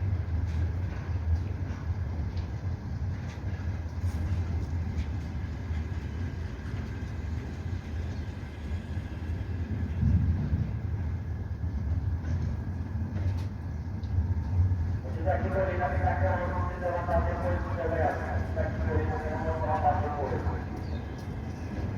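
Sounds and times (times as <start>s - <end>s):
freight train rumbling past: 0.0s - 21.9s
faint clicks: 13.2s - 14.5s.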